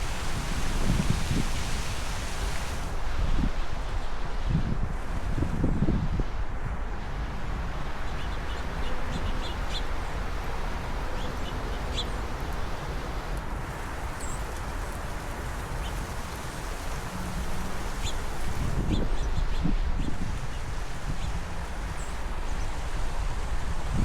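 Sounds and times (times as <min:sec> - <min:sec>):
wind noise on microphone: 0:00.0 - 0:24.0
songbirds chirping: 0:07.9 - 0:13.3.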